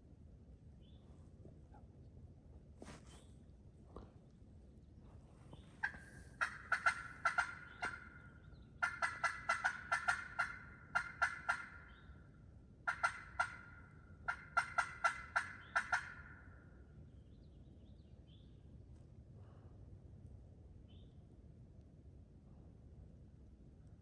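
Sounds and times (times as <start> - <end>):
friction turkey call hen yelps: 5.8 - 12.0, 12.9 - 16.5.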